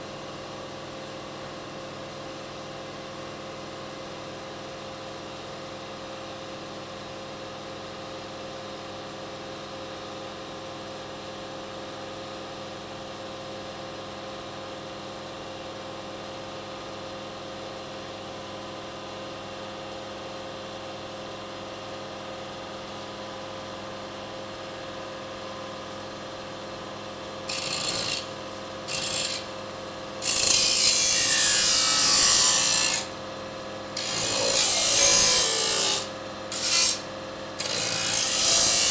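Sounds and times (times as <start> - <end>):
saw blade cutting metal: 27.5 - 33.2, 34.0 - 38.9
saw motor humming: 27.5 - 38.9.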